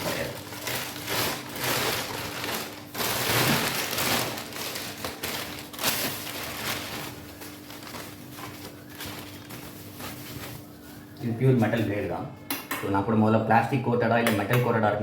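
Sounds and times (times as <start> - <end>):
plastic packaging crinkling: 0.0 - 11.4.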